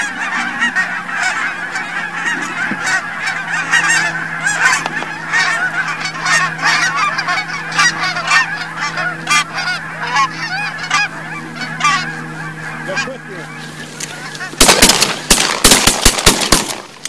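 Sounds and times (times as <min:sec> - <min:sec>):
geese honking: 0:00.0 - 0:17.0.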